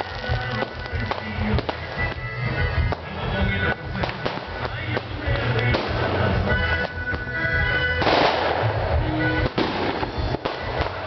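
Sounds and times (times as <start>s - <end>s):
festival music with heavy bass: 0.0s - 11.0s
fireworks bangs: 0.0s - 11.0s.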